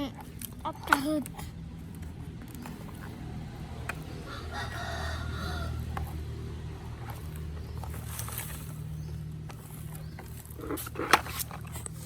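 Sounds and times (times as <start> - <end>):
rooster crowing: 4.1 - 6.5.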